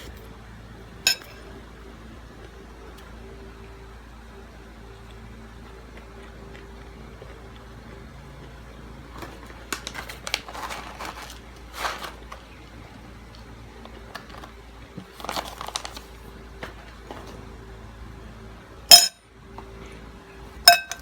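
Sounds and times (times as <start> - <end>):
steady low hum: 0.0 - 21.0
chewing noises: 4.9 - 9.3.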